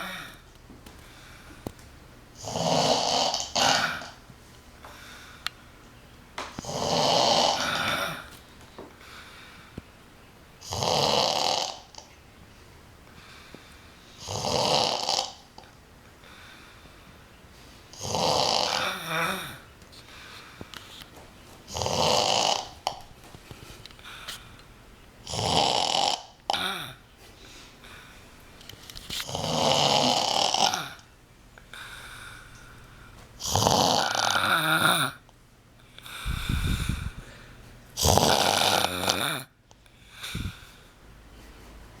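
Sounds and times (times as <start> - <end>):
woman snoring loudly: 2.4 - 4.2, 6.6 - 8.3, 10.6 - 12.0, 14.2 - 15.4, 18.0 - 19.6, 21.7 - 22.8, 25.3 - 27.0, 29.3 - 31.0, 33.4 - 35.2, 38.0 - 39.5.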